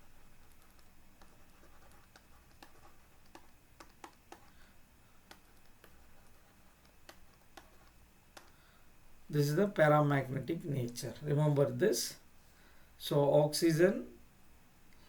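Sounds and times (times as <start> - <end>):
faint clicks and ticks: 0.3 - 8.6.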